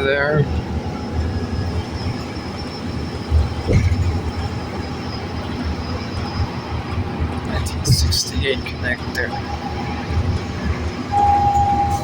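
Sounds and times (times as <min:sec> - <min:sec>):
bus engine and road rumble: 0:00.0 - 0:12.0
bumps and rattles: 0:03.2 - 0:04.7.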